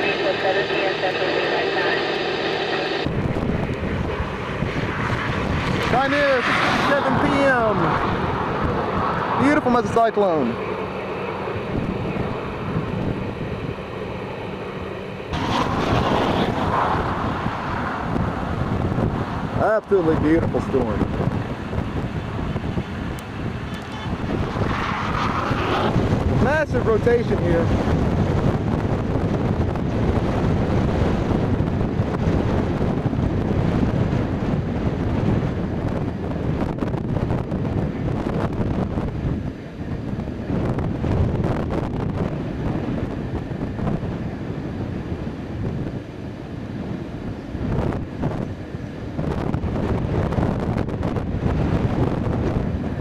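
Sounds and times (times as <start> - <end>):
steady low hum: 0.0 - 19.6
wind rumbling on microphone: 0.0 - 53.0.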